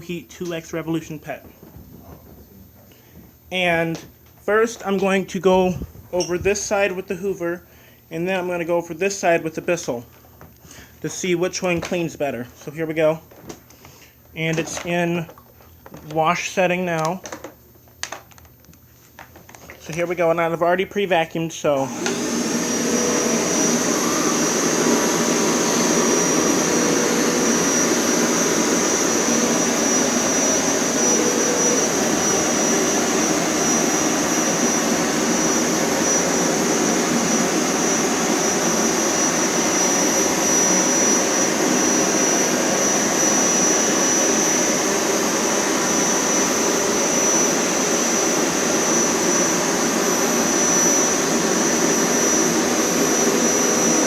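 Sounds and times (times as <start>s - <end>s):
carpet cleaner motor whining: 21.8s - 54.0s.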